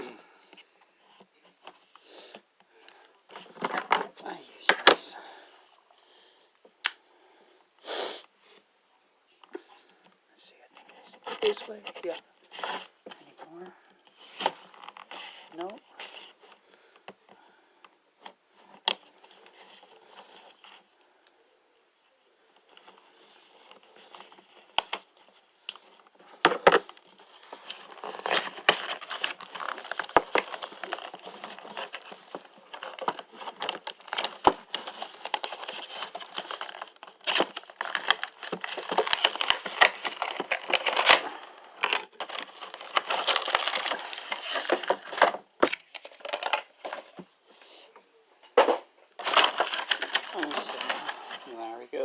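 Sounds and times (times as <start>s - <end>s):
sharp clicks and snaps: 6.8s - 7.0s
plastic packaging crinkling: 22.6s - 47.2s, 48.6s - 52.0s.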